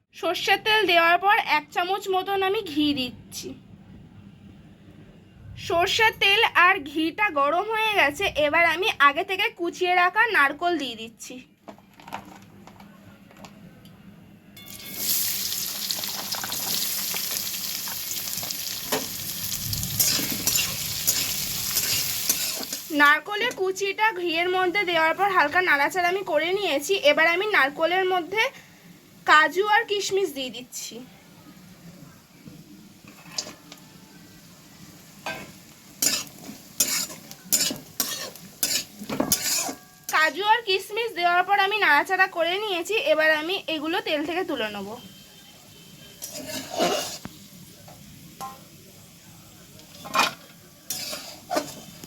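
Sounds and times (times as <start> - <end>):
food sizzling in hot oil: 14.6 - 23.6, 34.2 - 40.4, 46.1 - 52.0
spatula scraping a pan: 20.0 - 22.9, 35.3 - 40.0, 46.2 - 47.4, 50.0 - 52.0.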